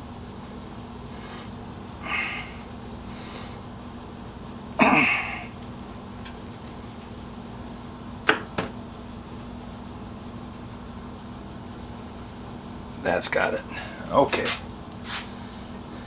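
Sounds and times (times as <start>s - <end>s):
man snorting or grunting: 4.8s - 5.5s.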